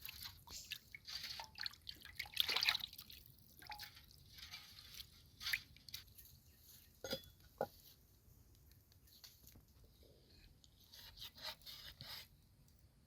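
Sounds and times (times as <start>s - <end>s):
water dripping and splashing: 0.0s - 6.1s.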